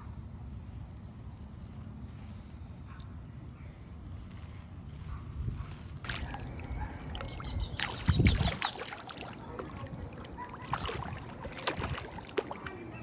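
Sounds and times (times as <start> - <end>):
water sloshing and splashing: 5.8 - 13.0.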